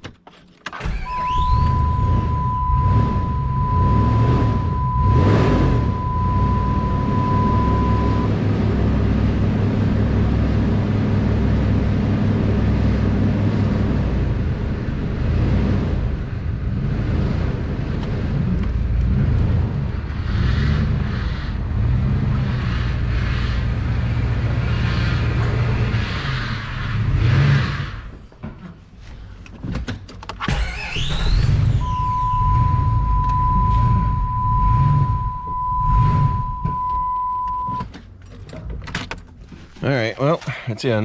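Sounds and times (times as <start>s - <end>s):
rough-running engine drone: 0.8s - 28.2s, 30.4s - 40.5s
steady high tone: 1.1s - 8.4s, 31.8s - 37.8s.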